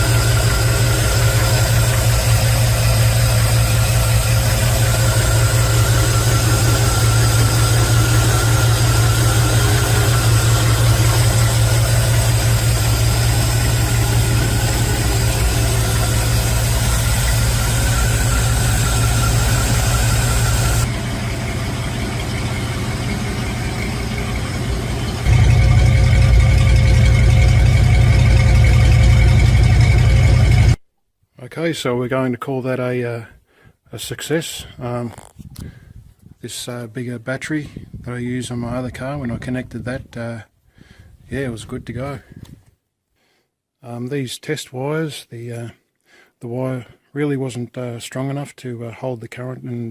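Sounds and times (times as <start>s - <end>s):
pickup engine idling: 0.0s - 30.8s.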